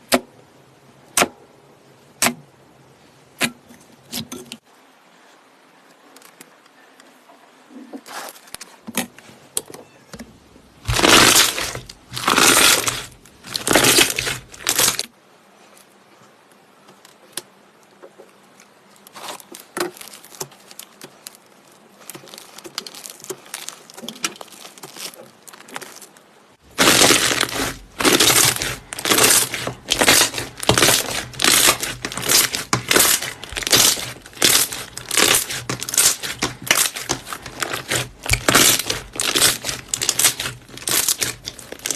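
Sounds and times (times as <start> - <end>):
slime squished by hand: 10.8 - 15.1, 26.7 - 41.9.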